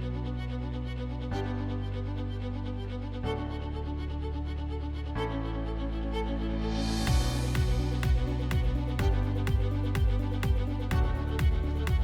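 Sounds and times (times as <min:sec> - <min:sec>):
electronic beat: 0:07.1 - 0:12.0.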